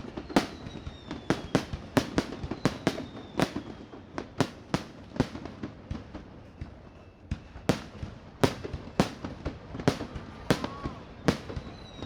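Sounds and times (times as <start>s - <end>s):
fireworks bangs: 0.0s - 12.0s.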